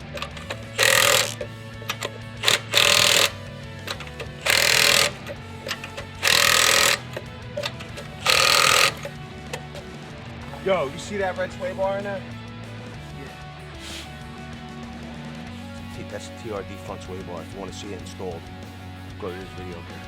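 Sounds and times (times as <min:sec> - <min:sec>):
impact wrench hammering lug nuts: 0:00.0 - 0:09.8
background music: 0:00.0 - 0:20.0.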